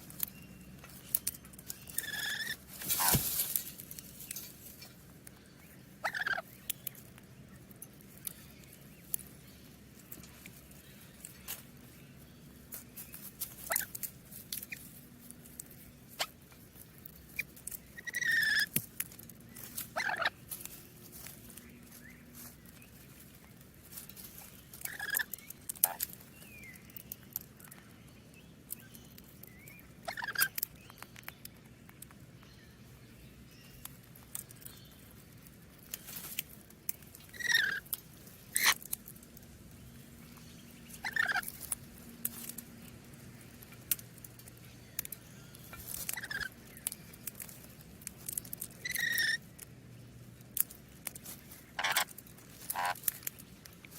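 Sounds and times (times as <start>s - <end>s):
parrots squawking and chirping: 1.7s - 3.2s, 6.0s - 6.6s, 13.6s - 14.0s, 17.3s - 18.7s, 19.9s - 20.4s, 24.8s - 26.0s, 30.0s - 30.6s, 37.3s - 37.9s, 38.5s - 38.9s, 40.9s - 41.7s, 45.7s - 46.6s, 48.7s - 49.4s, 51.6s - 53.1s.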